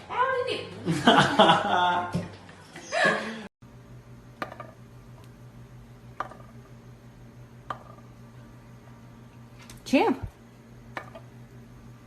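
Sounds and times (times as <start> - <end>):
steady low hum: 3.6 - 12.0
sharp knocks of hard objects: 4.4 - 4.8.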